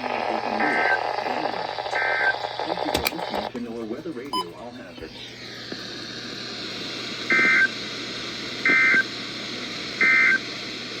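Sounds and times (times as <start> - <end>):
two-tone digital data bursts: 0.0 - 2.8
radio static hiss: 0.0 - 3.7, 5.0 - 11.0.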